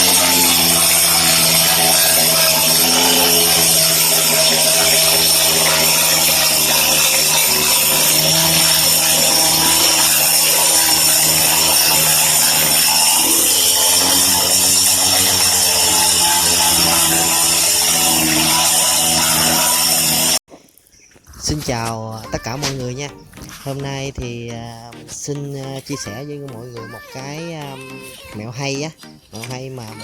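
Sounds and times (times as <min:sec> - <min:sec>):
power cutter motor whine: 0:00.0 - 0:20.4.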